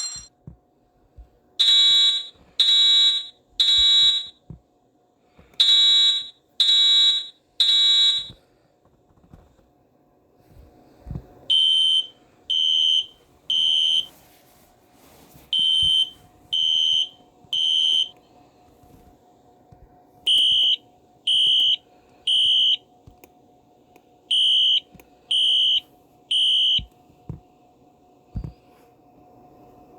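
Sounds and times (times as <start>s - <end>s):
smoke alarm beeping: 1.6s - 4.4s, 5.6s - 8.4s, 11.5s - 14.2s, 15.5s - 18.2s, 20.3s - 22.9s, 24.3s - 27.0s.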